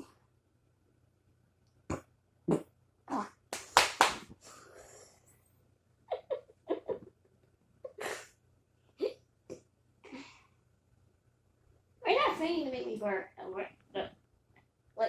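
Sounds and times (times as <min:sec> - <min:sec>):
short burps: 0:01.9 - 0:02.7.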